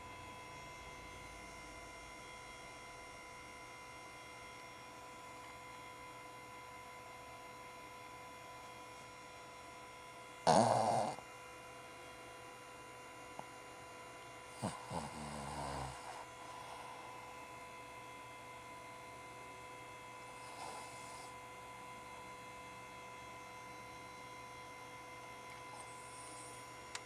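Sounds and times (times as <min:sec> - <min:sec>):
faint steady hum: 0:00.0 - 0:27.0
dog snoring: 0:10.4 - 0:11.3, 0:14.5 - 0:17.3, 0:20.2 - 0:21.5, 0:25.6 - 0:26.6.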